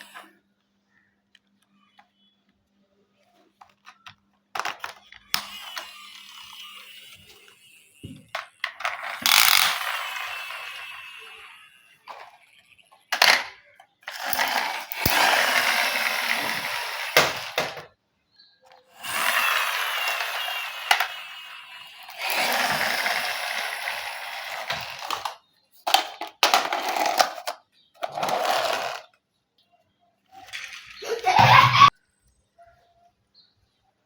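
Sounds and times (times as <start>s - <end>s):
toys clattering: 0.0s - 0.3s, 3.5s - 18.0s, 18.6s - 29.3s, 30.2s - 32.4s
toys rattling and scraping: 0.0s - 0.3s, 3.3s - 17.9s, 18.7s - 29.2s, 30.2s - 32.0s.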